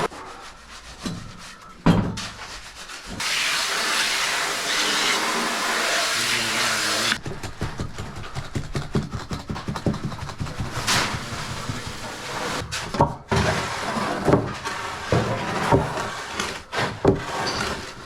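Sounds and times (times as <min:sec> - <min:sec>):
board scraping wet concrete: 0:02.3 - 0:18.0
wooden knocks: 0:07.2 - 0:13.2.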